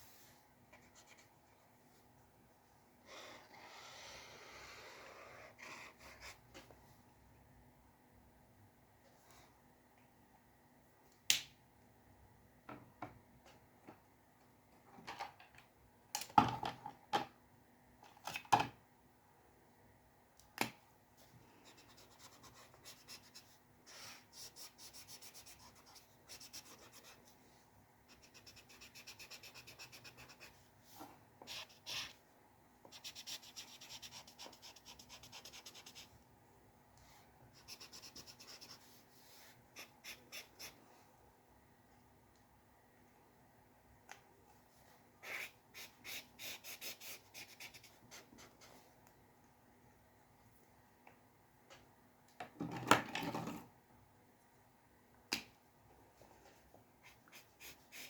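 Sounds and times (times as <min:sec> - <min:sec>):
pencil scratching on paper: 0:21.6 - 0:27.4, 0:28.1 - 0:30.6, 0:32.9 - 0:36.1, 0:37.6 - 0:40.8, 0:57.0 - 0:58.0.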